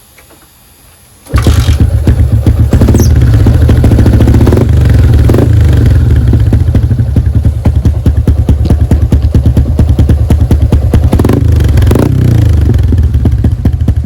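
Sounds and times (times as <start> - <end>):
motorcycle engine running loud: 1.3 - 14.0.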